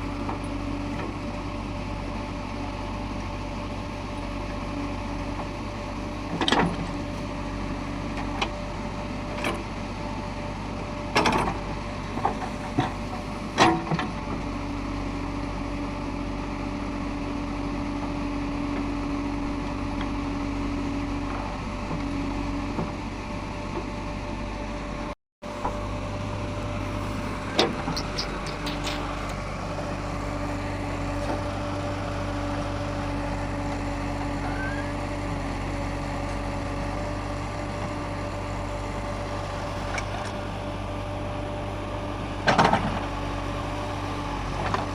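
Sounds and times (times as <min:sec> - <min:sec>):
backhoe diesel engine running: 0:00.0 - 0:44.9
sharp metal knocks and clanks: 0:27.5 - 0:29.2.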